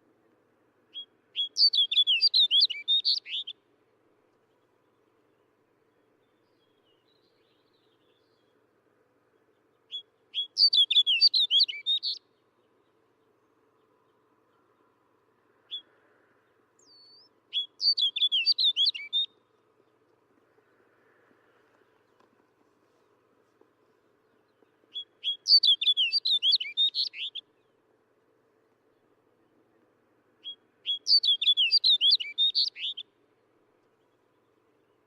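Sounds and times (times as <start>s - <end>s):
bird singing: 0.9s - 3.6s, 4.4s - 8.7s, 9.3s - 15.0s, 15.6s - 20.8s, 24.0s - 27.9s, 28.8s - 33.2s.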